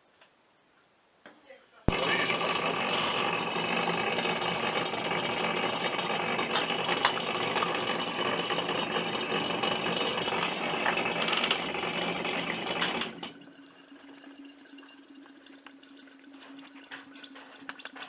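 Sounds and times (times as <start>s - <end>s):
machine motor rattling buzz: 1.9s - 13.3s.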